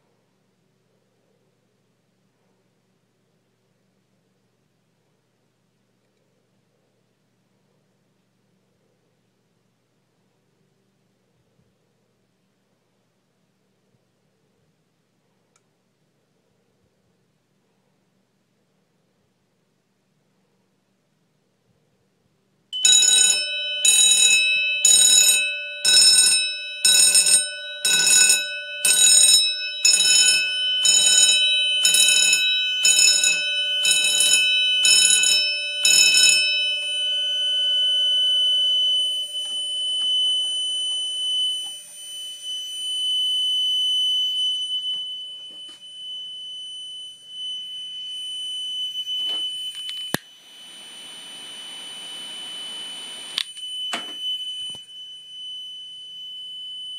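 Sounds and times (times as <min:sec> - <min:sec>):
fire alarm pulsing: 0:22.8 - 0:56.9
high-pitched buzzer tone: 0:22.8 - 0:56.9.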